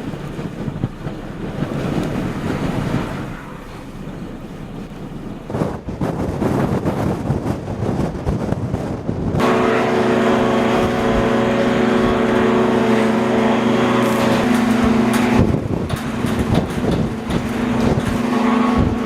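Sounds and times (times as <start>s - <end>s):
wind buffeting microphone: 0.0s - 19.0s
vehicle engine running: 9.4s - 19.0s.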